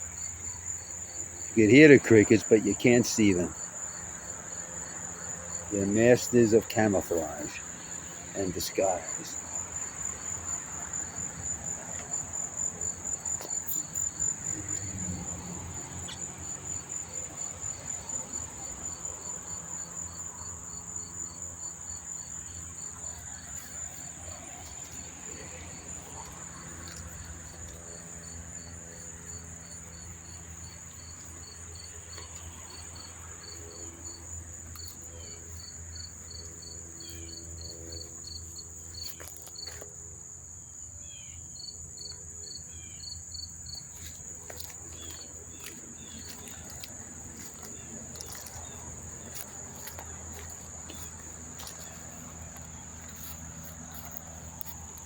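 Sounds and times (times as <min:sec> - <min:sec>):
cricket chirping slowly: 0:00.0 - 0:55.0
crickets trilling: 0:00.0 - 0:55.0.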